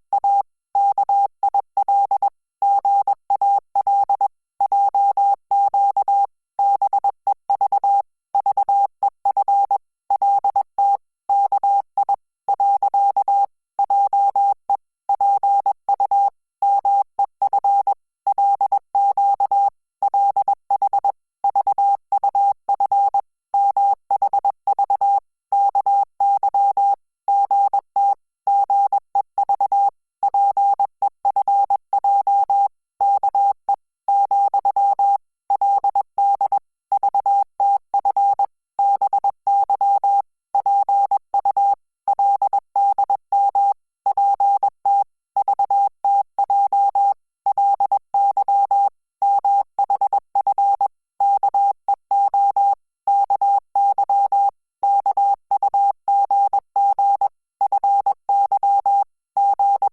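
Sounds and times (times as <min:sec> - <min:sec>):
morse code beeps: 0:23.6 - 0:43.6.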